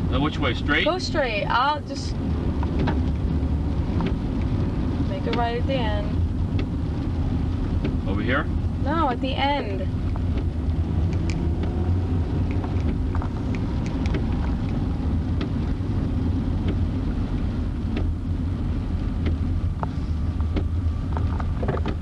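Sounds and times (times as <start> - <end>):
car road and engine rumble: 0.0 - 22.0
light knocks and clicks: 19.2 - 22.0.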